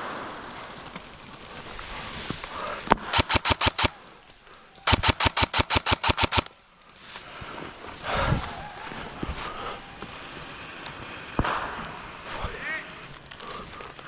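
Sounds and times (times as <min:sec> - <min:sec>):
airsoft gun bursts: 0:03.1 - 0:04.0, 0:04.8 - 0:06.6.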